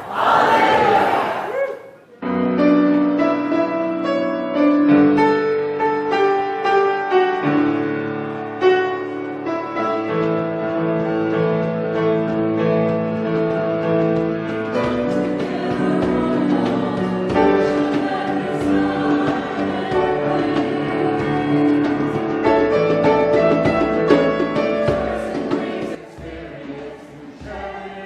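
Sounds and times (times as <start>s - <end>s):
congregation answering in unison: 0.0s - 2.0s.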